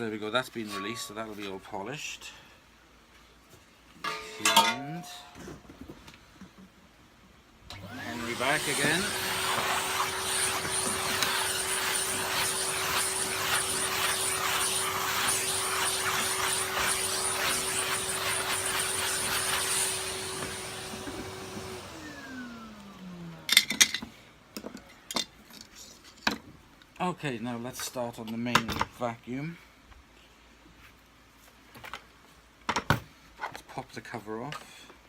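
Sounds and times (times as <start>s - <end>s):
vacuum cleaner running: 7.7s - 23.6s.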